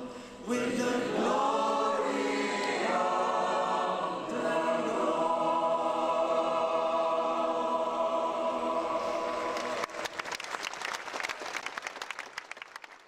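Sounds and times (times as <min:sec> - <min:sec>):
choir singing: 0:00.0 - 0:10.1
applause: 0:09.2 - 0:13.0.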